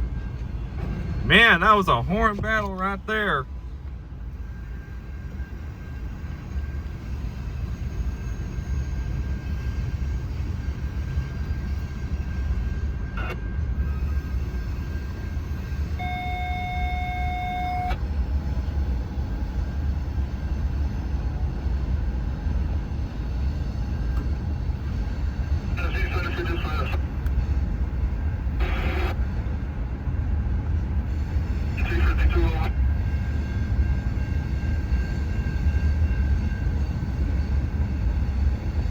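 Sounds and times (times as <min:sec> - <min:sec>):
freight train rumbling past: 0:00.0 - 0:38.9
brief steady tone: 0:13.1 - 0:18.0.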